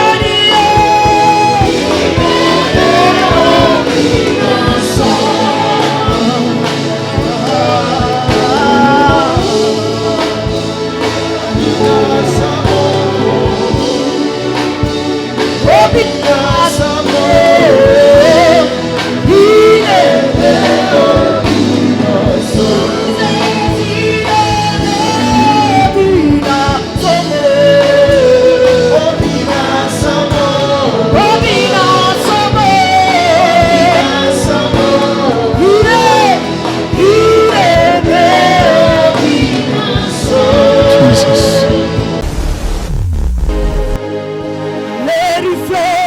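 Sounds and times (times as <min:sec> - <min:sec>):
person singing: 0:00.0 - 0:10.4, 0:15.7 - 0:42.0
instrumental accompaniment: 0:00.0 - 0:46.0.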